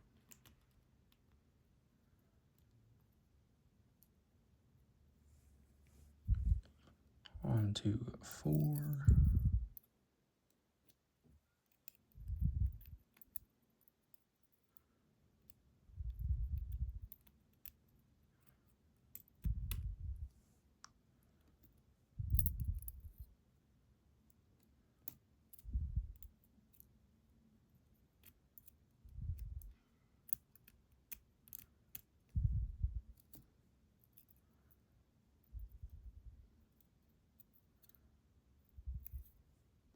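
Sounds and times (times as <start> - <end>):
soft low swells: 6.0 - 6.7, 8.8 - 9.7
small metal clicks: 11.6 - 14.8, 28.2 - 32.4.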